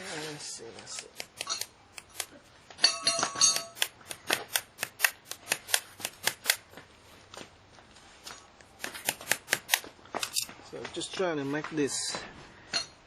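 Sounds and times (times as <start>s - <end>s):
sharp metal clicks and taps: 0.9s - 2.3s, 3.0s - 6.6s.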